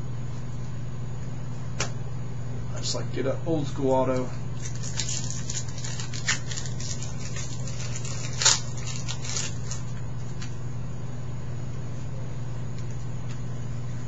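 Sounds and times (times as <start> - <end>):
low electrical hum: 0.0 - 14.0
cards rustling and clicking: 4.1 - 10.6.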